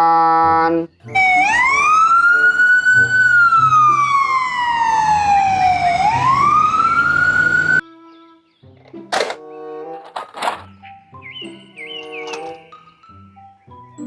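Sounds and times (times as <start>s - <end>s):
ambulance siren wailing: 1.1s - 7.8s.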